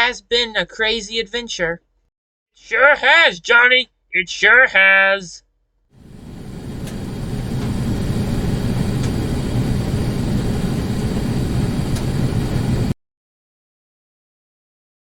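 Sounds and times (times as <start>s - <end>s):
boat engine rumbling: 6.0s - 12.9s.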